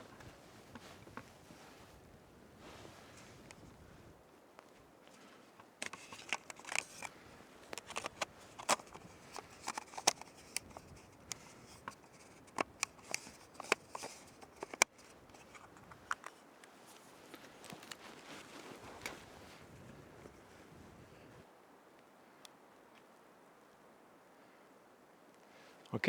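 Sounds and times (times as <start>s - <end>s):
short rustles: 0.0s - 21.5s
camera gear clicks: 5.6s - 7.1s, 7.7s - 16.4s.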